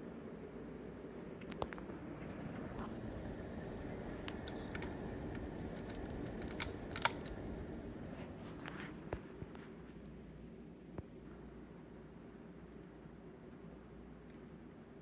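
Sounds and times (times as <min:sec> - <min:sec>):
ceiling fan whirring: 0:00.0 - 0:15.0
sharp clicks: 0:04.3 - 0:07.4.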